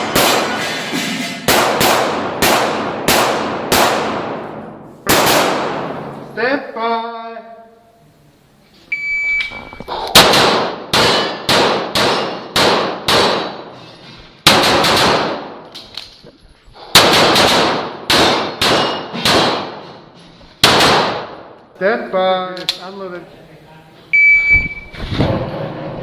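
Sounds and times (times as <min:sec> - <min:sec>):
pistol shots: 0:00.0 - 0:00.6, 0:01.5 - 0:06.1, 0:10.1 - 0:13.7, 0:14.4 - 0:15.6, 0:16.9 - 0:19.8, 0:20.6 - 0:21.5
shot timer beep: 0:24.2 - 0:24.9.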